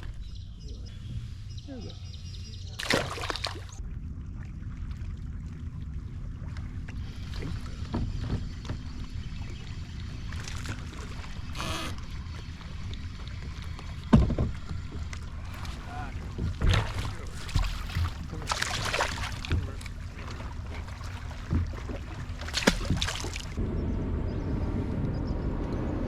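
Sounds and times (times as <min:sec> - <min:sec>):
water splashing: 0:02.8 - 0:23.6
wind rumble on microphone: 0:19.1 - 0:26.0.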